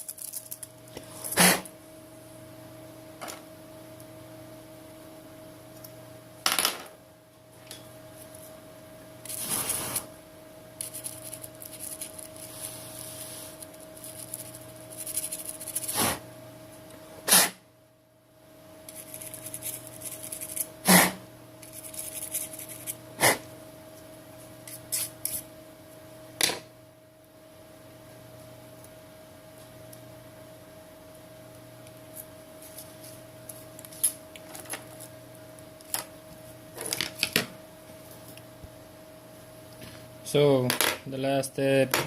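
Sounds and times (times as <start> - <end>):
faint steady hum: 0.0 - 42.0.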